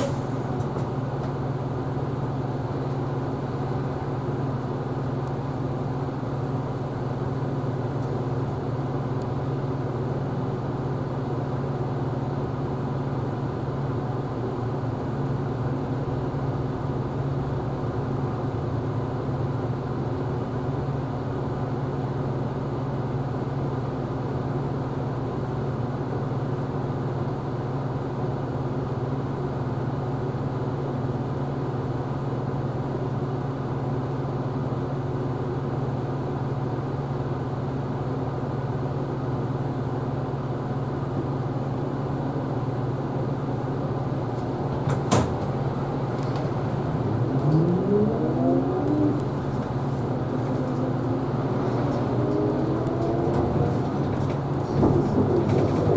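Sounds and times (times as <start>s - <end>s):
bus engine drone: 0.0s - 55.9s.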